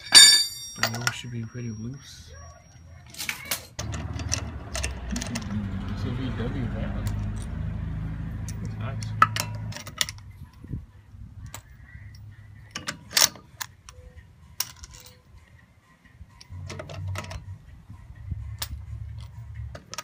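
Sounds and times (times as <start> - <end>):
lug nuts clinking: 0.0 - 2.1, 3.1 - 7.6, 8.3 - 10.6, 11.4 - 15.3, 16.4 - 17.6, 18.4 - 20.0.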